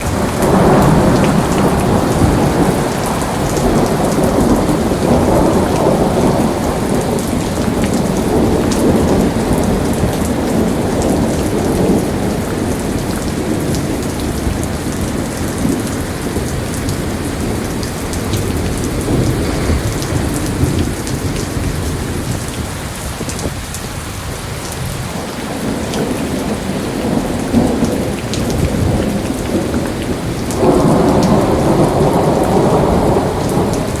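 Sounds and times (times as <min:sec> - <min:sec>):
torrential rain pouring: 0:00.0 - 0:34.0.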